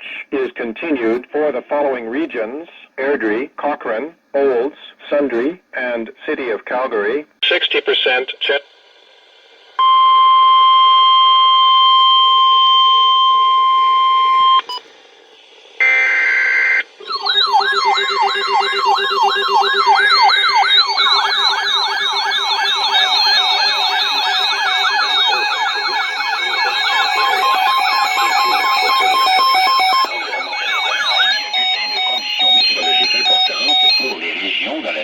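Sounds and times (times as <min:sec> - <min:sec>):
steady single-pitch alarm tone: 0:09.8 - 0:14.8, 0:15.8 - 0:34.2
warbling siren-like alarms: 0:09.8 - 0:14.8, 0:15.8 - 0:34.4
data burst noise: 0:15.8 - 0:35.0.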